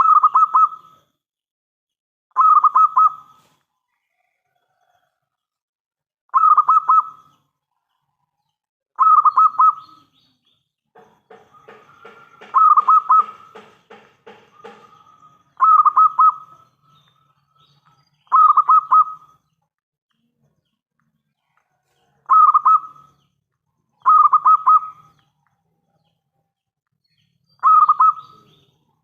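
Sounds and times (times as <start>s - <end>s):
dove cooing: 2.4s - 3.4s, 11.3s - 16.6s, 18.3s - 19.3s, 22.2s - 23.1s, 24.0s - 25.1s, 27.6s - 28.6s.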